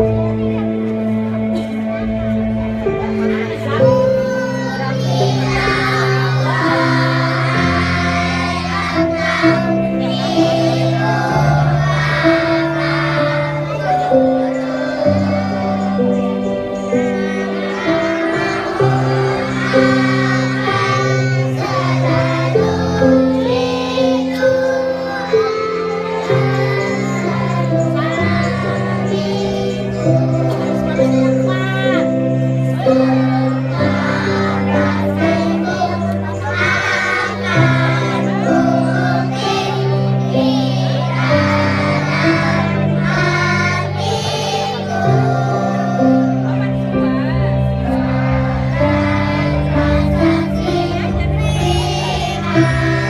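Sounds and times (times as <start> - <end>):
backing music with held chords: 0.0 - 53.0
young children singing: 0.0 - 53.0
backing music with bass notes: 46.6 - 53.0.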